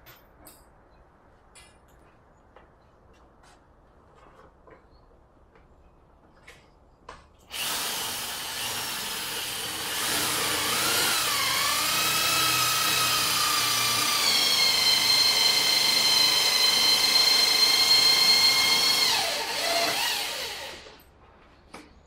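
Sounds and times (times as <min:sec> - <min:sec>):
power drill motor whine: 0:07.5 - 0:21.0.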